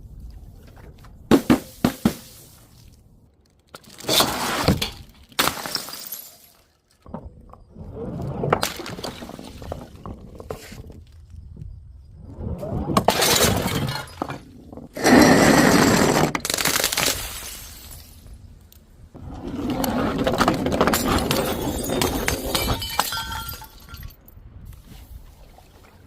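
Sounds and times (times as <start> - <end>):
glass crunching and crackling: 3.2 - 7.1, 16.4 - 18.3
glass bottles shattering: 3.8 - 6.8, 13.1 - 14.5, 16.4 - 18.2, 20.8 - 24.2.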